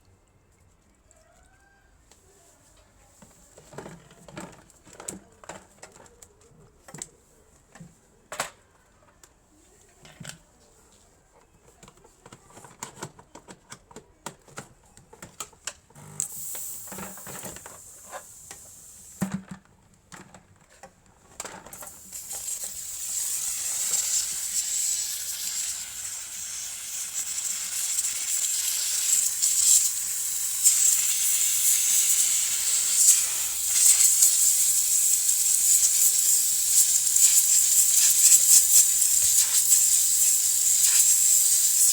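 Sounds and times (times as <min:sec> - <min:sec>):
spray hissing: 0:16.3 - 0:19.2, 0:21.8 - 0:41.9.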